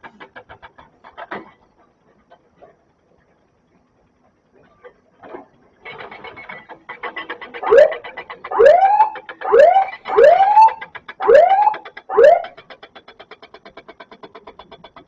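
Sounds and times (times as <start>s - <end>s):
fast rattling pulse: 5.8s - 15.0s
warning siren whoops: 7.6s - 12.6s.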